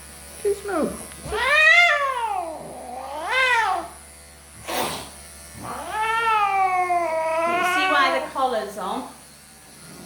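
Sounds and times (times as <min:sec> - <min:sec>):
cat hissing: 0:01.3 - 0:03.9, 0:04.6 - 0:08.3
cat yowling: 0:01.3 - 0:03.9, 0:05.6 - 0:08.2.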